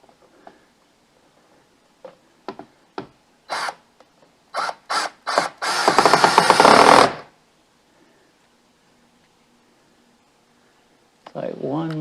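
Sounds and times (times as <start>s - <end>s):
cordless drill driving a screw: 3.5s - 3.8s, 4.6s - 7.2s.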